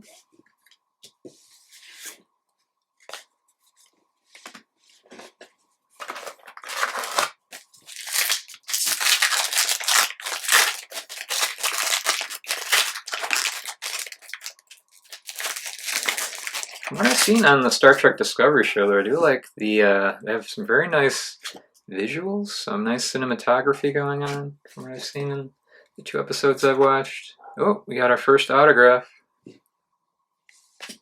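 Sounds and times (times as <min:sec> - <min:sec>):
wrapper tearing and crumpling: 0:06.0 - 0:17.6.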